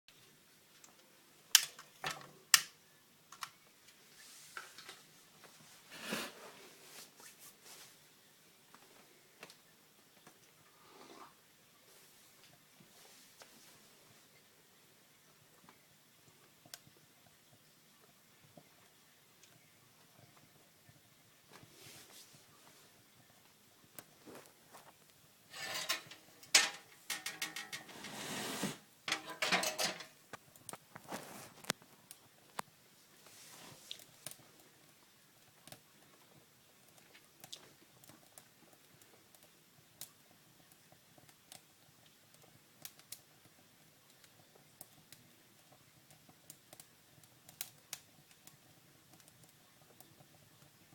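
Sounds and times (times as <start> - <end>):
fire crackling: 0.7 - 7.8, 11.9 - 50.9
rustling: 24.0 - 31.8, 33.1 - 34.5
objects clicking and knocking: 25.5 - 28.2, 29.1 - 31.8
sharp clicks and knocks: 25.6 - 27.9
rush of fire igniting: 27.8 - 28.9.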